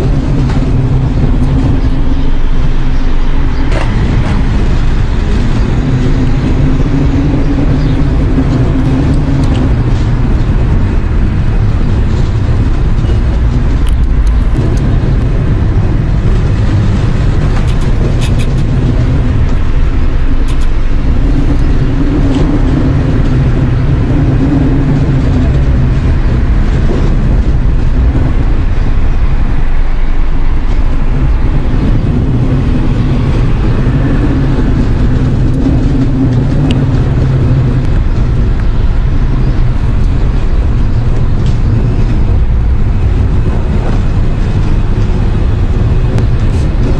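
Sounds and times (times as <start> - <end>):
low rumble with droning hum: 0.0 - 46.9.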